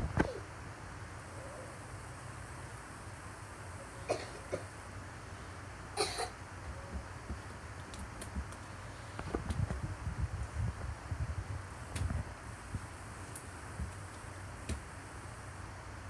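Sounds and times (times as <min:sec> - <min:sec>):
short odd coughs: 0:04.1 - 0:04.7, 0:06.0 - 0:06.3.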